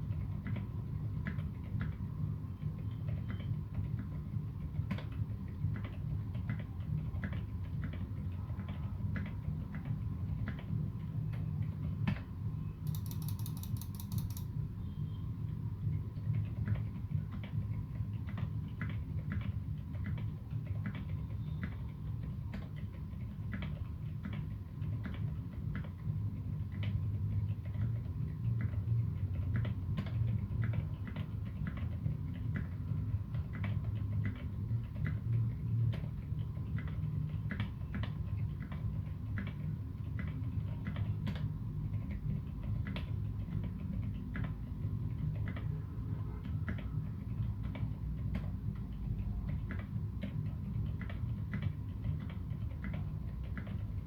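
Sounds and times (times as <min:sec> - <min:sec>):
soft keyboard keystrokes: 0:12.8 - 0:14.5.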